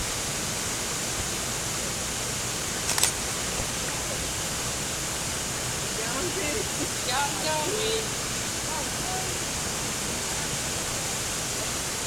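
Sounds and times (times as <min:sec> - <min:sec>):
waterfall rushing: 0:00.0 - 0:12.0
sharp clicks: 0:02.9 - 0:03.2.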